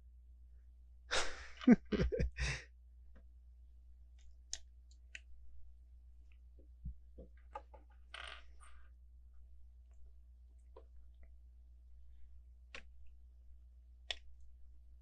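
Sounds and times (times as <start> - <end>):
sigh-like breath: 2.4 - 2.6.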